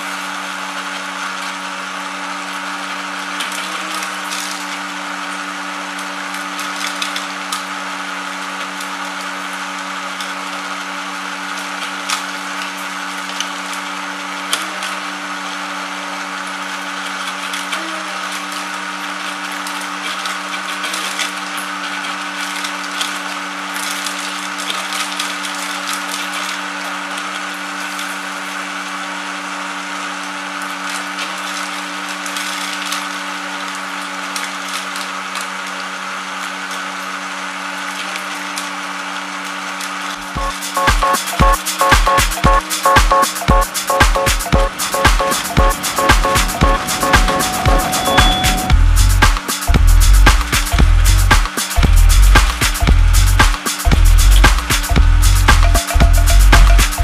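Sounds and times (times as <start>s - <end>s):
machine motor humming: 40.4s - 49.3s.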